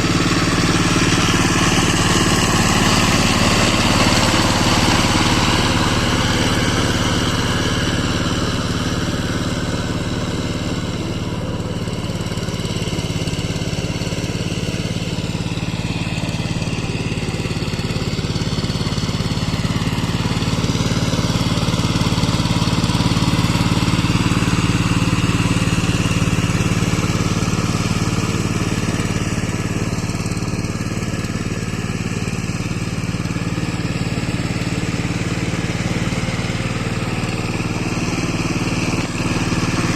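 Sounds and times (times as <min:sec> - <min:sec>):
rotavator churning mud: 0:00.0 - 0:09.5, 0:33.7 - 0:39.9
power tiller engine running: 0:00.0 - 0:39.9.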